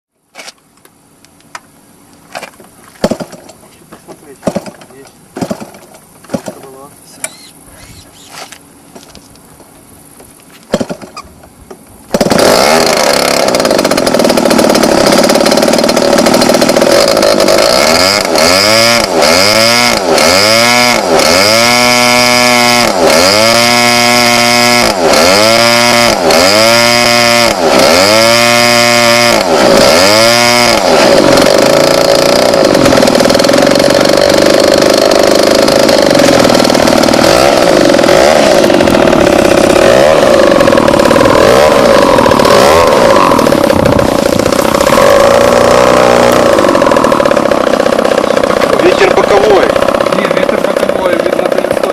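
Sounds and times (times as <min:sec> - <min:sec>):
model airplane engine revving: 0:12.1 - 0:51.9.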